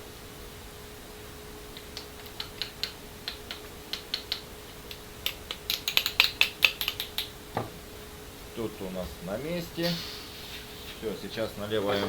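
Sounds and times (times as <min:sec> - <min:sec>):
faint steady hum: 0:00.0 - 0:12.0
small parts clicking and tapping: 0:01.8 - 0:07.8.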